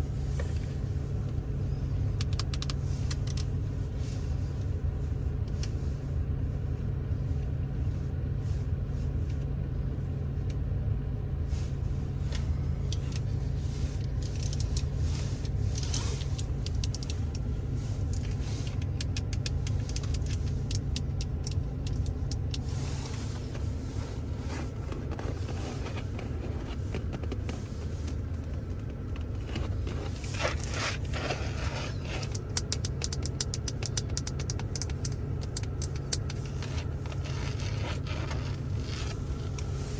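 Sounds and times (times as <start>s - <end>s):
low cabin hum: 0.0s - 39.9s
fingers tapping on car interior: 14.1s - 22.7s, 24.5s - 39.7s.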